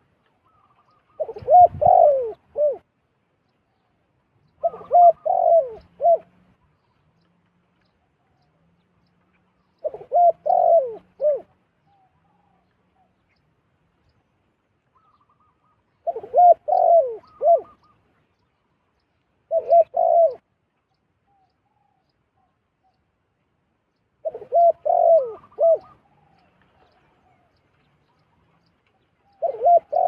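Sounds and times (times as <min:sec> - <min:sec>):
dove cooing: 0:00.4 - 0:02.9, 0:04.5 - 0:06.4, 0:09.8 - 0:13.1, 0:15.0 - 0:18.0, 0:19.5 - 0:20.4, 0:24.2 - 0:27.6, 0:29.2 - 0:30.0.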